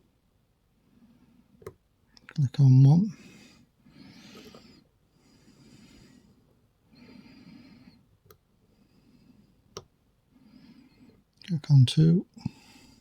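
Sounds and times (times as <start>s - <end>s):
soft breathing: 0.8s - 1.6s, 3.1s - 11.3s, 12.3s - 13.0s.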